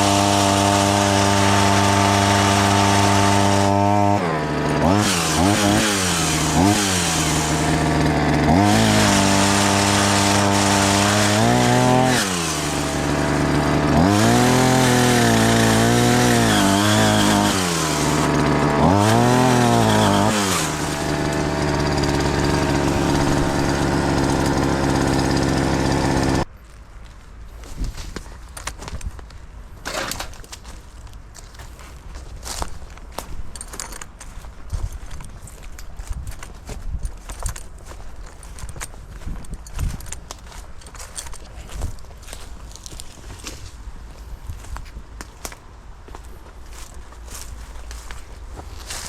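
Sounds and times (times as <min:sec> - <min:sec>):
chainsaw cutting at high revs: 0:00.0 - 0:26.5.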